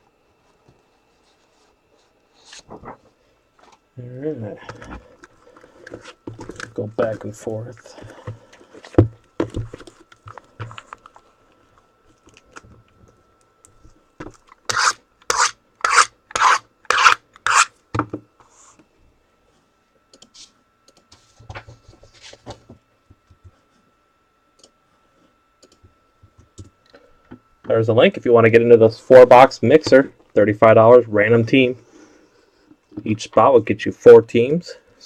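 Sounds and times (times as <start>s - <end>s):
rasping scraping strokes: 14.7s - 17.7s.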